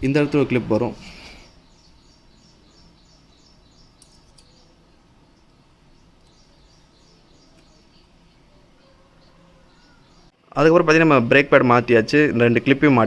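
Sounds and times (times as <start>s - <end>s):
birds chirping: 0.0s - 10.4s.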